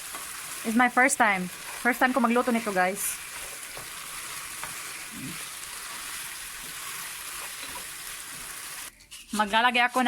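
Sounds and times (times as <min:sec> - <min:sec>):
chicken sizzling in frying pan: 0:00.0 - 0:08.9.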